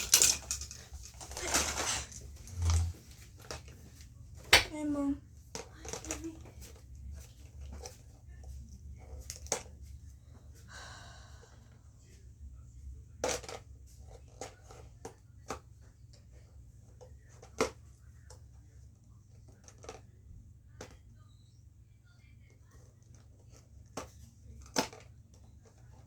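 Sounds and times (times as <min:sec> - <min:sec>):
plastic pieces clicking and clacking: 0:00.0 - 0:03.6, 0:05.6 - 0:06.6.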